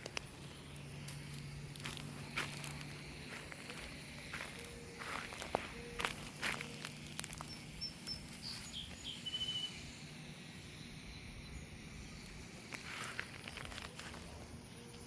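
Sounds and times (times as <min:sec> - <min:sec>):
soft rustling steps: 0:00.0 - 0:09.0
faint background hum: 0:00.0 - 0:15.0
small bird chirping: 0:00.0 - 0:15.0.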